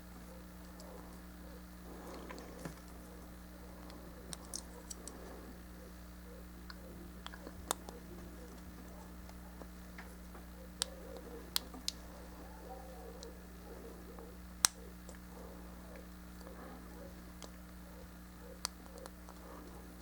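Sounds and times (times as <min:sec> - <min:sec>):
low hum: 0:00.0 - 0:20.0
plastic parts clicking: 0:03.8 - 0:05.3.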